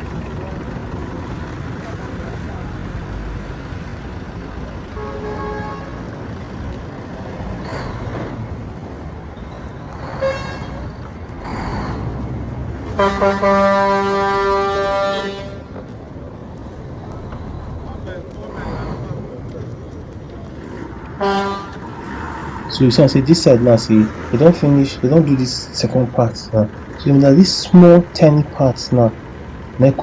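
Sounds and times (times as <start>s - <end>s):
road traffic rumbling: 0.0s - 30.0s
vehicles passing close by: 0.0s - 30.0s
loud vehicle horn blaring: 4.9s - 6.1s, 10.2s - 10.8s, 12.9s - 15.8s, 21.2s - 21.8s
short horn toot: 12.9s - 15.7s.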